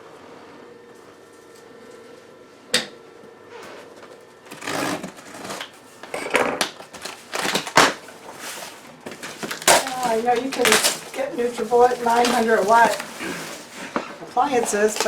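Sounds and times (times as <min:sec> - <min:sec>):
cardboard scraping and rustling: 0:04.5 - 0:05.8, 0:06.8 - 0:15.0.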